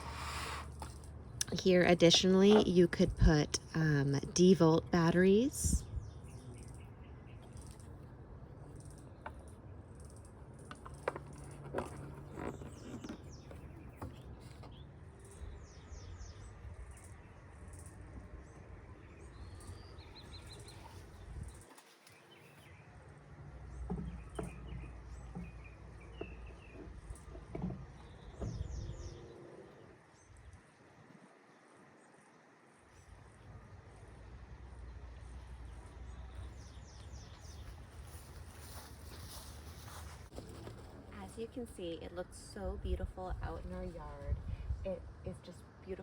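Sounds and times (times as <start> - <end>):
small birds chirping: 0.0 - 23.0, 23.6 - 30.8, 34.7 - 39.9.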